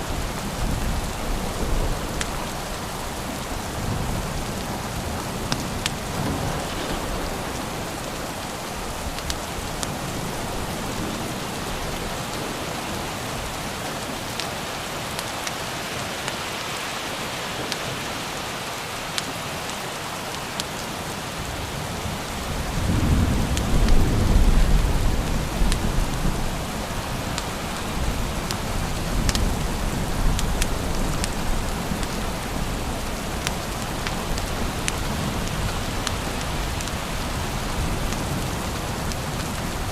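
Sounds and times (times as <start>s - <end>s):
thunder rumbling: 0.0s - 13.5s, 22.4s - 39.9s
steady rain falling: 0.0s - 39.9s.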